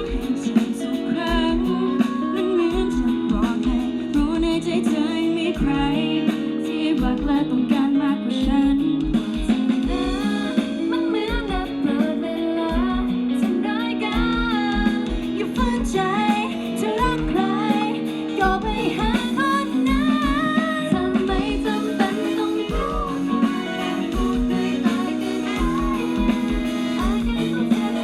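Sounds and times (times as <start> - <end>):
live pop band playing: 0.0 - 28.0
person singing: 0.0 - 28.0
kick drum beat: 24.1 - 27.7.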